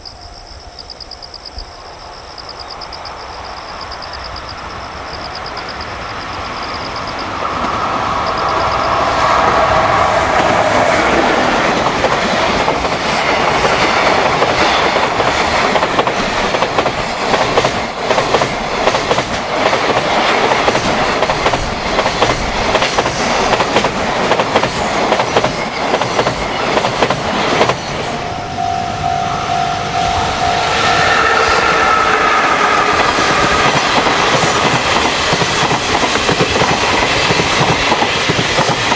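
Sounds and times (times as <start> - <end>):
train wheels clicking on rails: 2.8 - 38.9
short steady tone: 27.8 - 32.4.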